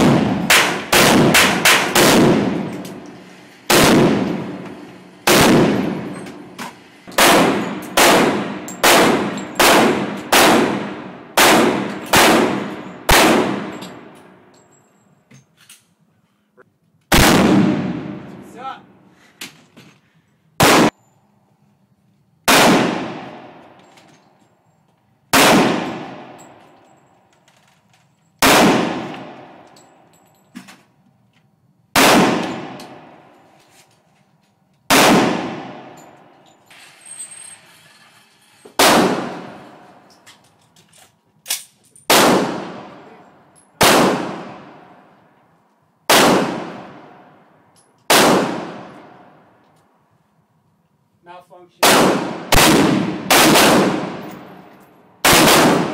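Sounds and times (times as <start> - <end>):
gunshots with ringing tail: 0.0 - 2.8, 3.7 - 4.6, 5.2 - 6.5, 7.1 - 14.2, 17.1 - 18.5, 20.6 - 20.9, 22.5 - 23.7, 25.3 - 26.6, 28.4 - 29.6, 32.0 - 33.3, 34.9 - 36.0, 38.8 - 39.8, 42.1 - 43.2, 43.8 - 45.1, 46.1 - 47.4, 48.1 - 49.3, 51.8 - 54.6, 55.2 - 55.9.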